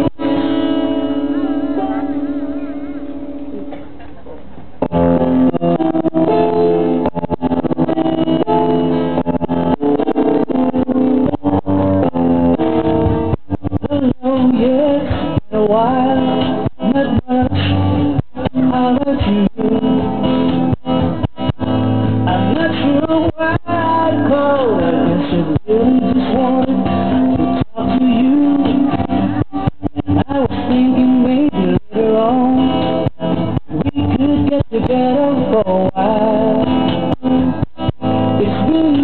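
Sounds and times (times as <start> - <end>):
guitar accompaniment: 0.0 - 39.0
person singing: 13.6 - 20.5, 22.2 - 39.0.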